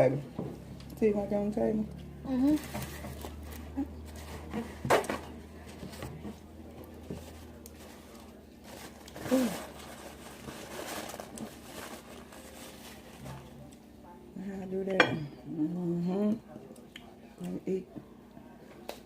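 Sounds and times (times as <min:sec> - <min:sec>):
crunching and chewing tacos: 0:01.9 - 0:13.8.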